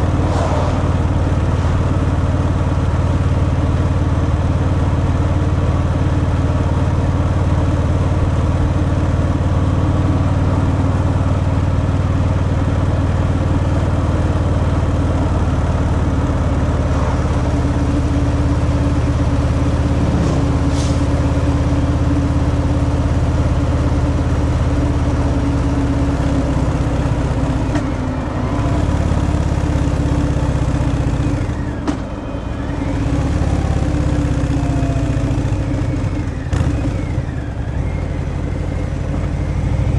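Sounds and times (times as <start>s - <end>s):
motorcycle engine running: 0.0s - 31.8s, 32.7s - 39.9s.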